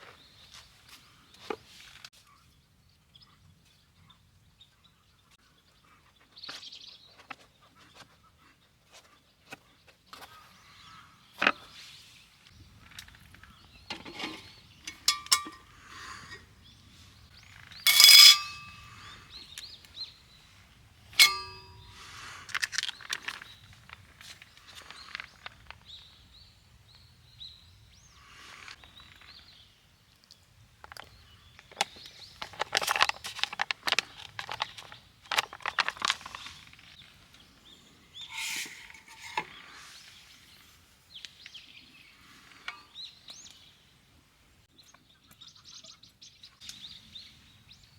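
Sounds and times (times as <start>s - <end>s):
cookware clinking and clanking: 13.9s - 16.3s, 17.9s - 19.0s, 21.2s - 21.9s, 38.3s - 39.5s
ringing metal strikes: 17.9s - 18.9s, 21.2s - 21.9s.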